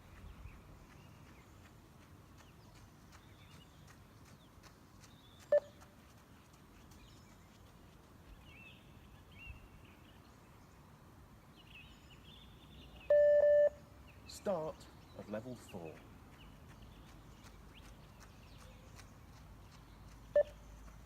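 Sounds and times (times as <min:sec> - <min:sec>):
beeps: 0:13.1 - 0:13.8, 0:20.4 - 0:20.6.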